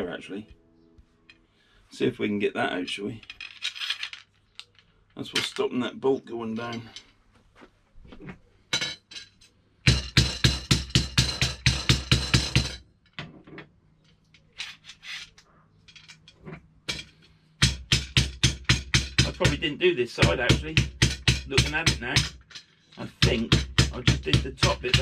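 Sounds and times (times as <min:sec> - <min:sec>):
hammer tapping metal pole: 0:09.9 - 0:12.8, 0:16.9 - 0:19.6, 0:20.2 - 0:25.0.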